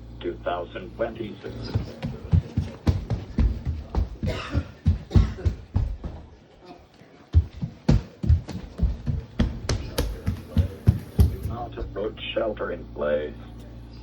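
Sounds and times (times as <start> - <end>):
automated voice speaking: 0.2 - 2.0, 11.4 - 13.6.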